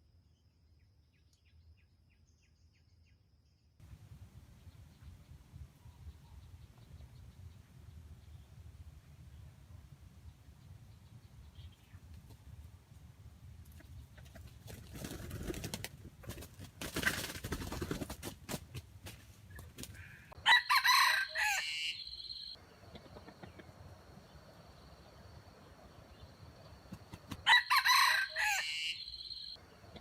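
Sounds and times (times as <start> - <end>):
rooster crowing: 20.3 - 22.6, 27.4 - 29.6.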